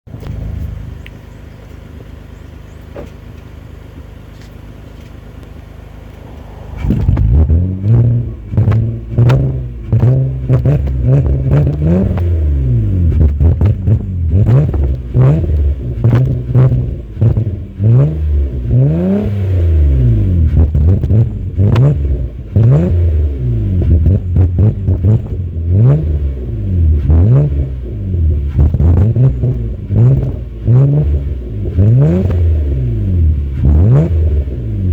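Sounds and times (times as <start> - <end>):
car engine idling and revving: 0.1 - 34.9
exhaust pops: 4.3 - 18.8, 19.8 - 23.0, 23.6 - 25.7, 26.8 - 34.9.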